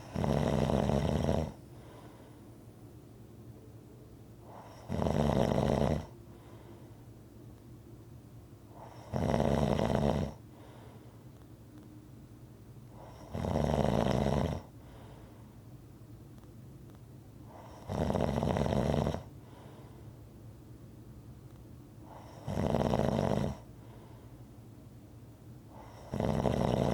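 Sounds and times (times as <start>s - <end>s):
person snoring: 0.0s - 1.6s, 25.8s - 26.9s.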